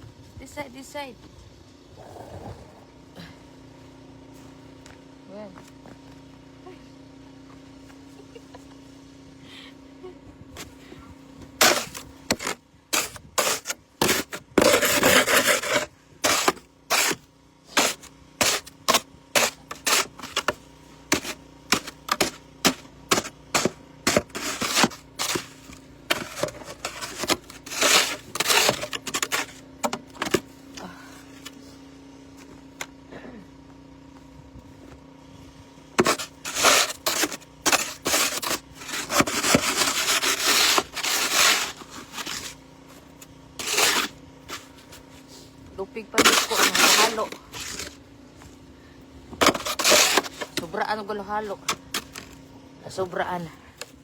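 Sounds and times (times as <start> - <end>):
snow shovel scraping snow: 11.6 - 30.6, 36.0 - 48.0, 49.4 - 53.5.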